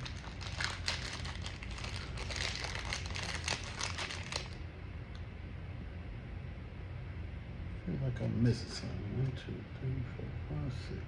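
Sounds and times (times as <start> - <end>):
plastic wrapper crinkling: 0.0 - 4.6.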